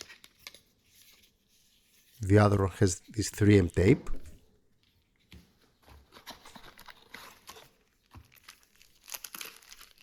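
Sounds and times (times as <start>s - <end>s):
packaging rustling and clicking: 5.8s - 10.0s.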